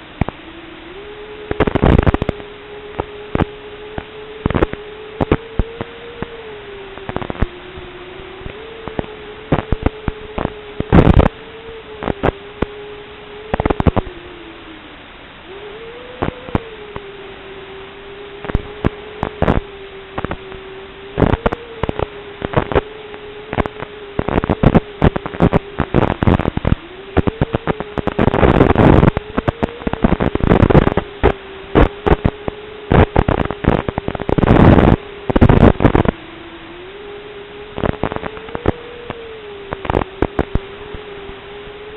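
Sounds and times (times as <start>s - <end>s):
static crackles: 0.0s - 41.9s
wavering electronic hum: 0.0s - 41.9s.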